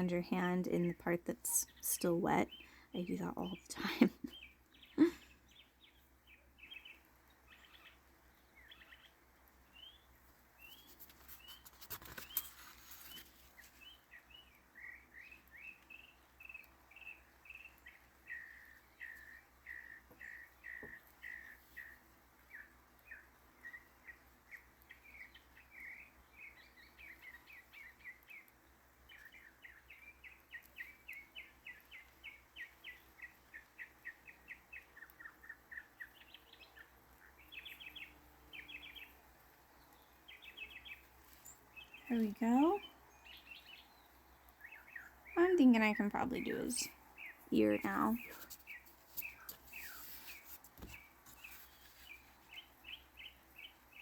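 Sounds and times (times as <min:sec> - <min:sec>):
birds chirping: 0:00.0 - 0:54.0
brief rustle: 0:10.7 - 0:13.8, 0:48.2 - 0:52.4.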